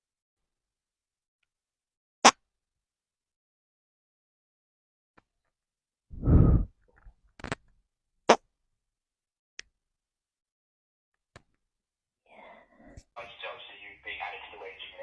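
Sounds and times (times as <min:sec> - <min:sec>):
low buzzy fart: 0:06.2 - 0:06.7.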